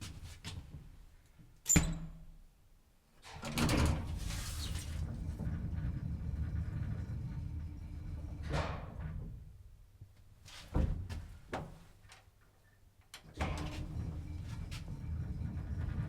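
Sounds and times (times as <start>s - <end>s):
elevator low machine hum: 3.5s - 9.9s, 13.3s - 16.0s.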